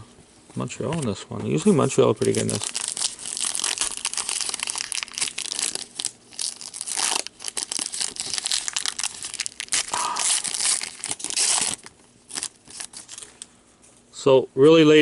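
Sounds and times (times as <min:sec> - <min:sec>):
wrappers crinkling and tearing: 0:01.5 - 0:13.5.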